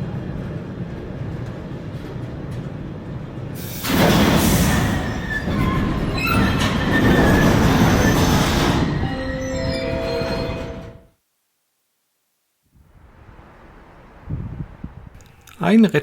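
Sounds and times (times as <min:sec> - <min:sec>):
train rumbling past: 0:00.0 - 0:11.1
high wheel squeals: 0:03.9 - 0:10.9.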